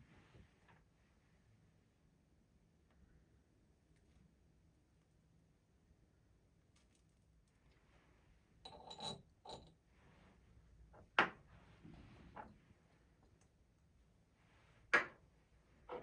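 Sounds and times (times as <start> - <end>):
glassware clinking: 8.7 - 9.7.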